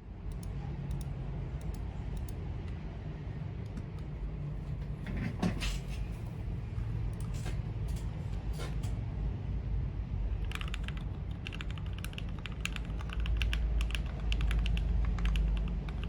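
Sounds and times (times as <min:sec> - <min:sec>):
steady low hum: 0:00.0 - 0:16.0
mechanical keyboard key presses: 0:10.5 - 0:16.0.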